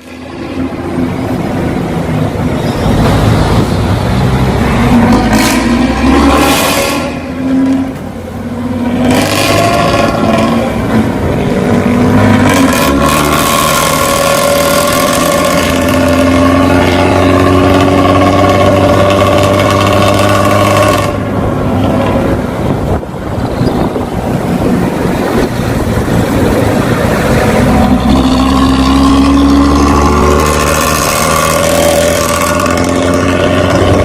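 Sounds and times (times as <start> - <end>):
bus diesel engine snoring exhaust: 11.6 - 21.4, 27.2 - 34.0.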